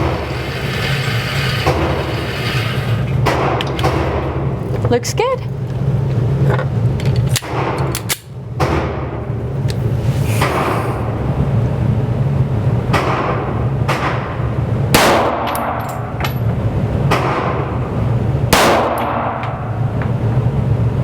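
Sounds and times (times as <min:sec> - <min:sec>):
steady low hum: 0:00.0 - 0:21.0
pistol shots echoing indoors: 0:14.9 - 0:16.2, 0:18.5 - 0:19.9.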